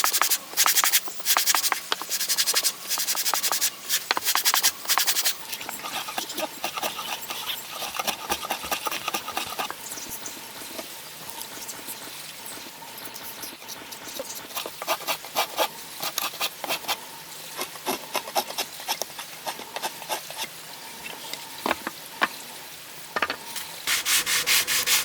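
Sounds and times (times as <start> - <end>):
sandpaper rubbing wood: 0.0 - 9.7, 23.9 - 25.0.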